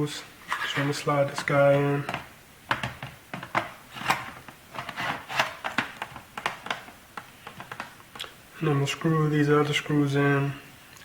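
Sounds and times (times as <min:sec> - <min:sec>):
plastic scraping on plastic: 0:00.4 - 0:08.2
plastic clicks and taps: 0:05.6 - 0:08.3.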